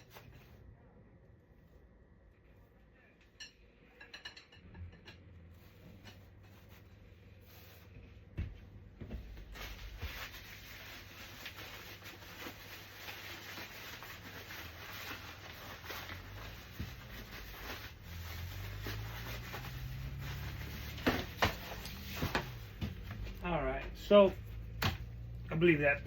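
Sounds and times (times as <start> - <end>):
rustling and rubbing of parts: 9.0 - 25.9.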